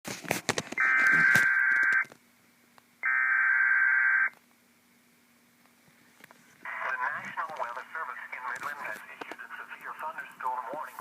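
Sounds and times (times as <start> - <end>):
clicks and crackles: 0.1 - 2.2, 5.6 - 10.5
faint low hum: 0.4 - 11.0.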